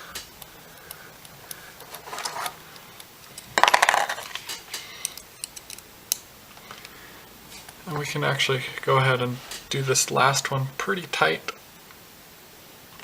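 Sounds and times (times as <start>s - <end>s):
metal screws ticking and clicking: 0.2s - 6.2s.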